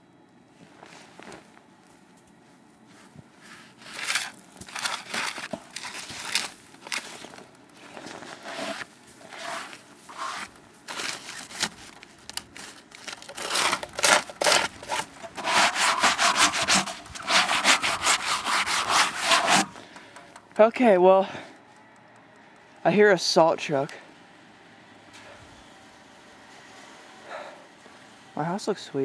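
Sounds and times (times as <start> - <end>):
footsteps crunching through snow: 0.6 - 19.8.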